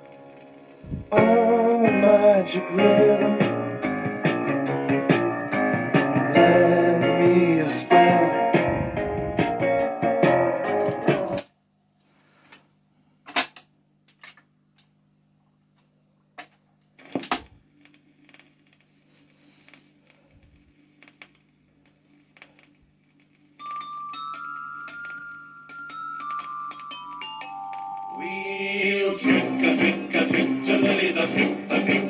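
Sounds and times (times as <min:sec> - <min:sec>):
song on record player: 0:00.0 - 0:11.5, 0:24.8 - 0:32.0
chiming bell-like music intro: 0:23.6 - 0:29.3.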